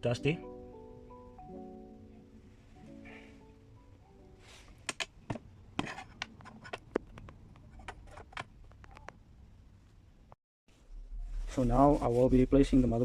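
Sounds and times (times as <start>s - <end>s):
background music: 0.0s - 5.2s.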